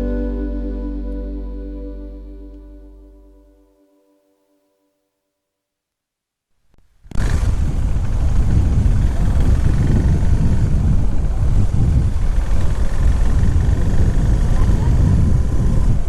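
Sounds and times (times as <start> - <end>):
vehicle noise: 7.1 - 16.0
wind buffeting microphone: 7.1 - 16.0.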